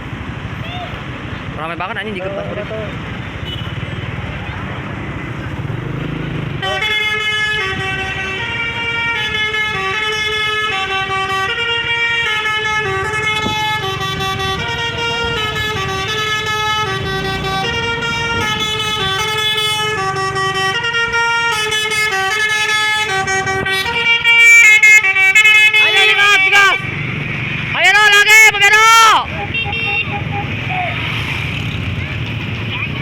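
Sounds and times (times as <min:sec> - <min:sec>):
bus horn playing a melody: 0:03.4 - 0:03.8, 0:06.6 - 0:26.8, 0:28.9 - 0:30.9.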